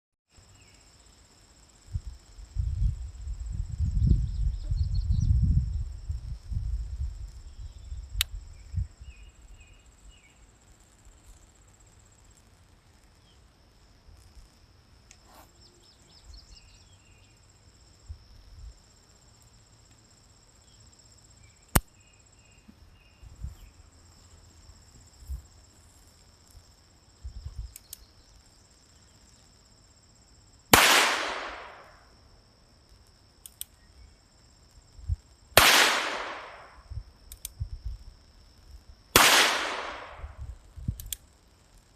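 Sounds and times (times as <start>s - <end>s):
insects droning: 0.3s - 41.9s
revolver gunshots echoing: 30.8s - 32.0s, 35.6s - 36.8s, 39.2s - 40.4s
sharp click: 33.4s - 33.8s, 37.3s - 37.6s, 40.9s - 41.2s.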